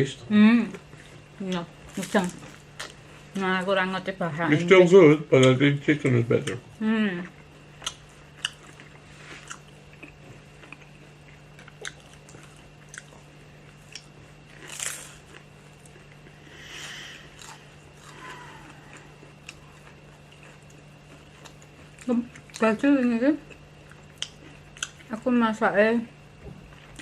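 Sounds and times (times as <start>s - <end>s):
faint steady hum: 0.0s - 27.0s
person chewing and crunching: 0.7s - 3.2s, 7.2s - 25.2s.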